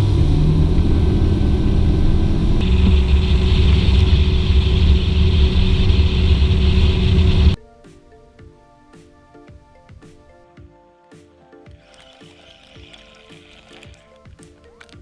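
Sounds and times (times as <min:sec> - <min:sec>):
boat motor running: 0:00.0 - 0:07.6.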